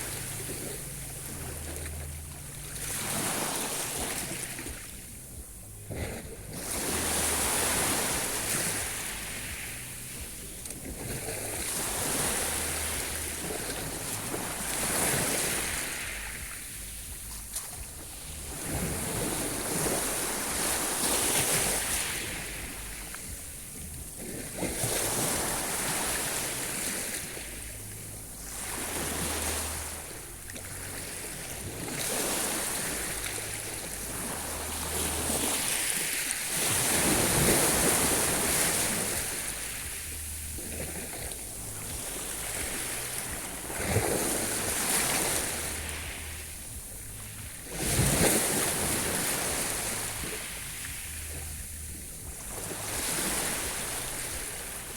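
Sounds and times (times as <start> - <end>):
sea waves breaking on shore: 0.0 - 54.9.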